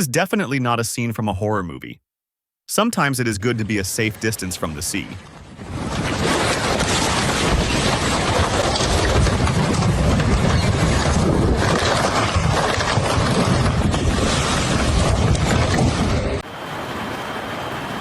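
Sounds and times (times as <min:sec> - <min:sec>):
rough sea roaring: 0:03.7 - 0:18.0
storm wind buffeting microphone: 0:04.1 - 0:16.5.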